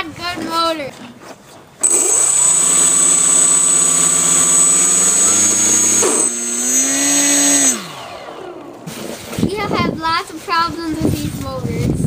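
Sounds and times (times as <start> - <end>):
thin high electronic tone: 1.8 - 8.0
electric motors whining: 1.8 - 9.4.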